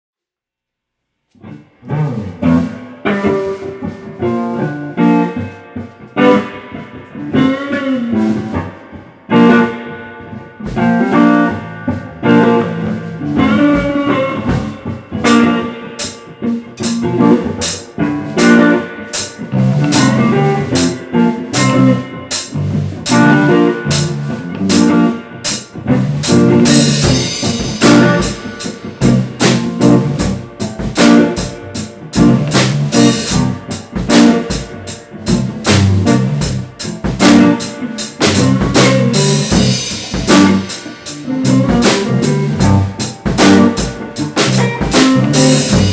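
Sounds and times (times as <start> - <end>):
guitar playing: 1.3 - 45.9
drum kit: 1.4 - 45.9.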